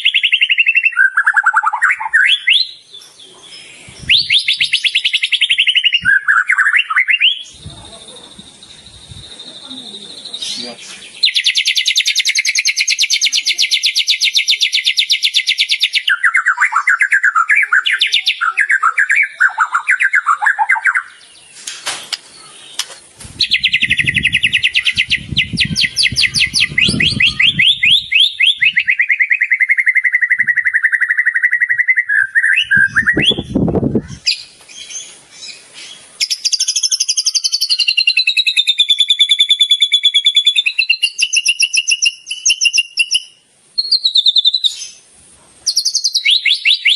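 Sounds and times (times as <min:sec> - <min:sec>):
songbird singing trills: 0:00.0 - 0:46.9
rising and falling whistles: 0:23.4 - 0:33.6.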